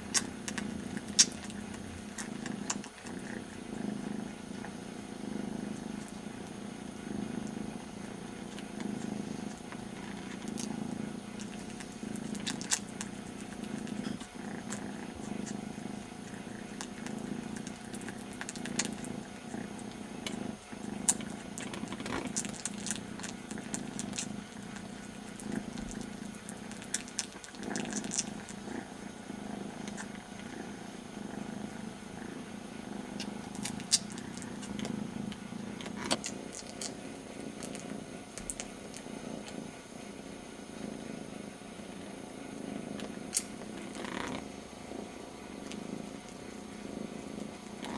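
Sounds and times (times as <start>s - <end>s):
small sharp licking clicks: 0.0s - 3.1s, 11.4s - 15.6s, 21.0s - 28.7s, 33.2s - 39.6s, 43.0s - 44.4s
kitten purring: 0.0s - 47.9s.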